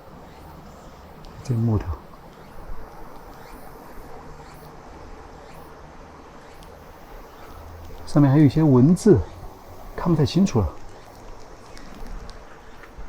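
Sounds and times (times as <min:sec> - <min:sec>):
low background noise: 0:00.0 - 0:13.0
faint light clicks: 0:07.8 - 0:08.2, 0:10.7 - 0:13.0.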